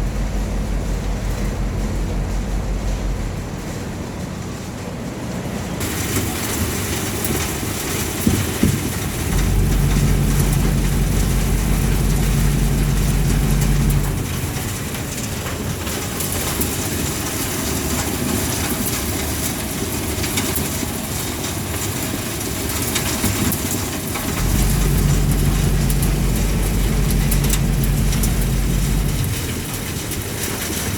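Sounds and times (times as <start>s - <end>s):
deep low hum: 0.0s - 4.8s, 9.0s - 14.8s, 24.3s - 29.9s
furnace blower running: 0.0s - 15.3s, 24.0s - 30.2s.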